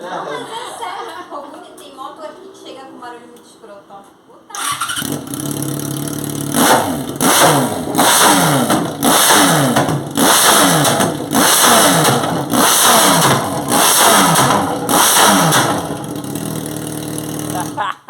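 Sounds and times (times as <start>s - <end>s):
motorcycle engine revving: 4.6s - 17.8s.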